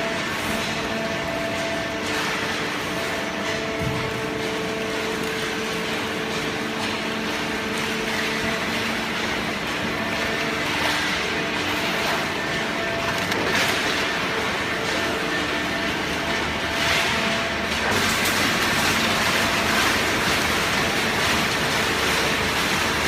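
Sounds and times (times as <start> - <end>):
baler motor and pump humming: 0.0 - 23.0.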